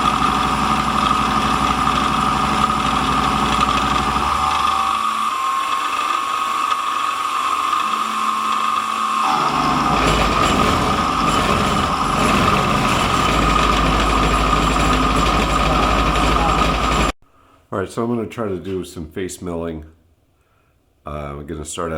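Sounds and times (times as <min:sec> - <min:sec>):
milling machine high whine: 0:00.0 - 0:17.2
rough metal cutting noise: 0:00.0 - 0:17.2.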